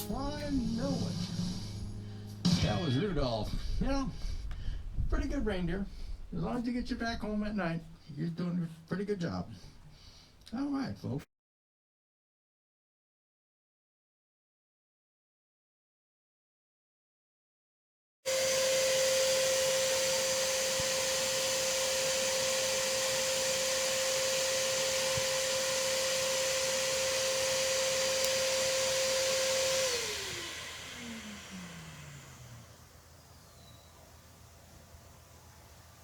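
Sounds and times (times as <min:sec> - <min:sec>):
snow machine blower whining: 0:00.0 - 0:04.6, 0:18.3 - 0:36.0.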